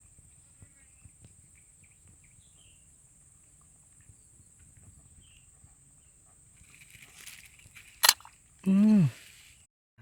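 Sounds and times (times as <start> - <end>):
soft rustle: 6.6 - 9.6.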